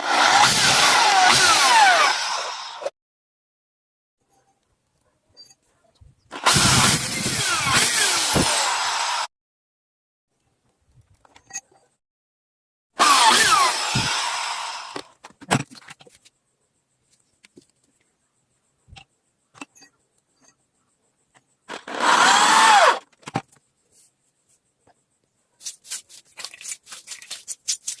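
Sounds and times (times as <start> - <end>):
electric power tool motor: 0.0 - 2.9, 6.3 - 9.3, 13.0 - 15.1, 21.7 - 23.0.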